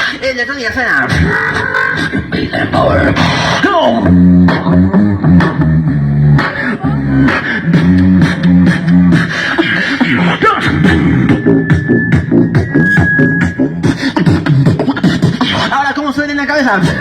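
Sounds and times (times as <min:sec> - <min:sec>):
human beatboxing: 0:00.0 - 0:17.0
hummed bass line: 0:01.1 - 0:15.7
high whistling tone: 0:11.2 - 0:13.8.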